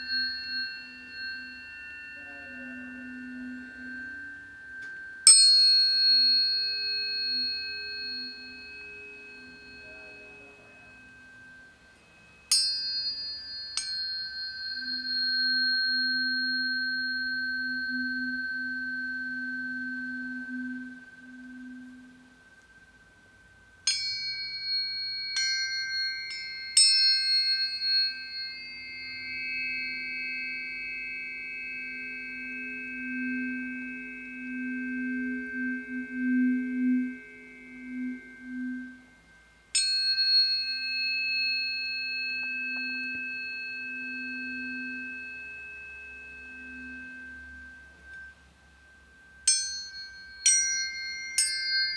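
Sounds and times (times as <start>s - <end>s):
low hum: 0.0s - 39.7s
tuning forks ringing: 0.0s - 51.9s.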